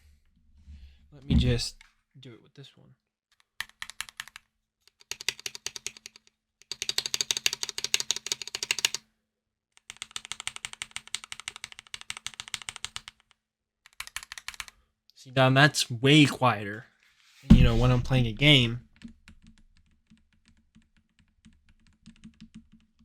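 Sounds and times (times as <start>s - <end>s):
fast typing on mechanical keyboard: 3.6s - 9.0s, 9.8s - 14.7s, 19.0s - 23.0s.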